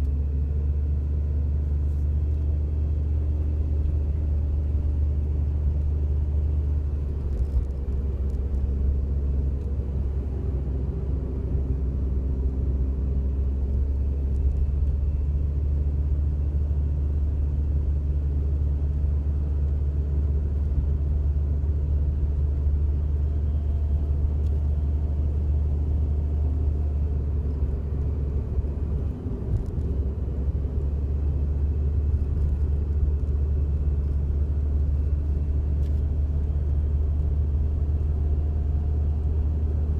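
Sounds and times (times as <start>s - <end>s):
engine and road rumble: 0.0s - 39.9s.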